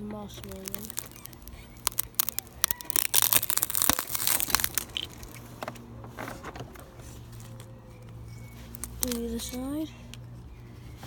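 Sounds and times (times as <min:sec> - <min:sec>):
tyre crushing something brittle: 0:00.2 - 0:05.6, 0:08.4 - 0:09.5.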